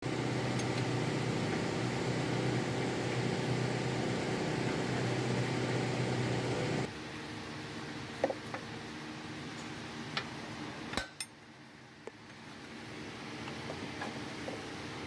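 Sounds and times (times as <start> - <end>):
machine humming: 0.0 - 6.9.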